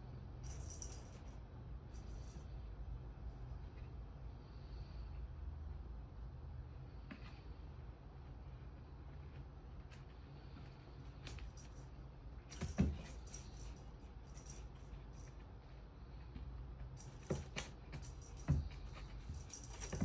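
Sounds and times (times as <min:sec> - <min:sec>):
low steady hum: 0:00.0 - 0:20.0
cat toy rattling and jingling: 0:00.4 - 0:02.4, 0:11.3 - 0:15.5, 0:16.9 - 0:20.0.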